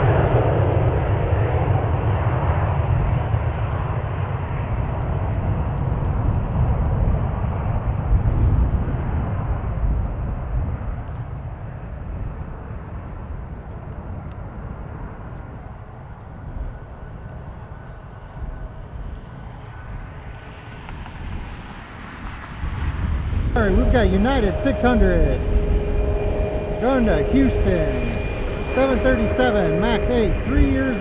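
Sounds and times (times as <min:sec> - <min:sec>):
jet engines rumbling: 0:23.6 - 0:31.0.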